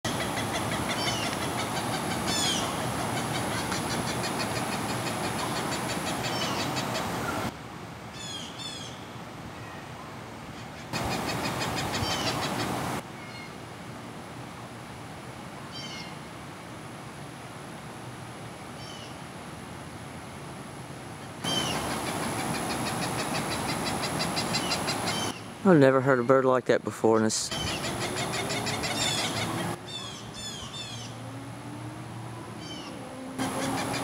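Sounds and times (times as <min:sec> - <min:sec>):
bird calling high notes: 0:27.5 - 0:31.7.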